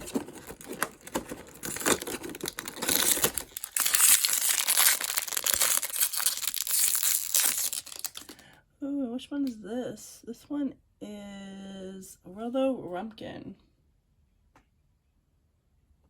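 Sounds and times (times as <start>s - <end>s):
wrapper crinkling: 0.0s - 8.4s.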